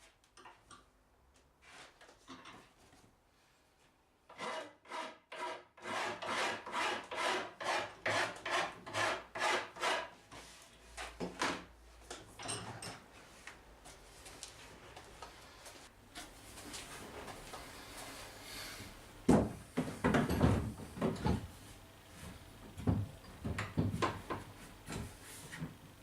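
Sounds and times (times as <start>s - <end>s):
wood rasping or sanding: 4.4s - 10.0s.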